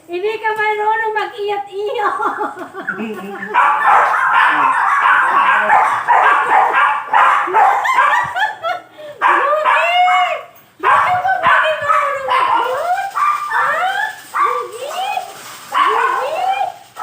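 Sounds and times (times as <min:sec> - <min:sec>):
dog whining and yelping: 0:02.2 - 0:08.5, 0:10.8 - 0:14.7
dogs barking: 0:02.2 - 0:17.0.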